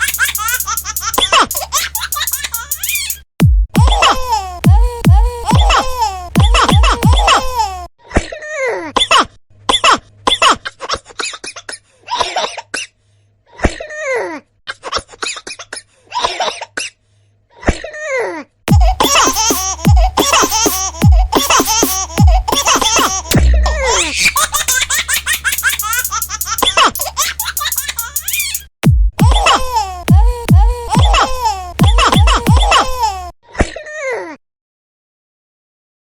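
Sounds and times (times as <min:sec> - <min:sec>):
baby laughing: 0:00.0 - 0:03.2, 0:03.8 - 0:07.9, 0:18.7 - 0:33.3
music with low thumping beat: 0:00.0 - 0:04.0, 0:04.7 - 0:05.8, 0:06.4 - 0:07.3, 0:18.7 - 0:29.5, 0:30.1 - 0:32.8.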